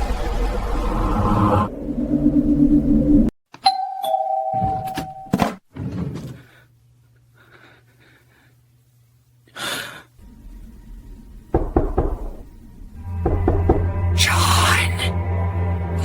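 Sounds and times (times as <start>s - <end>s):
low hum: 0.0s - 3.3s, 10.2s - 16.0s
knocks: 11.5s - 12.5s, 13.2s - 14.0s.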